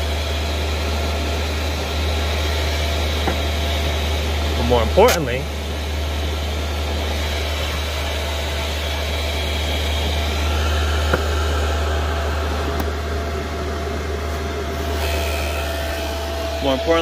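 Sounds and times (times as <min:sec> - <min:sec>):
air heater blower whirring: 0:00.0 - 0:17.0
low hum: 0:00.0 - 0:17.0
heater click: 0:12.5 - 0:13.0.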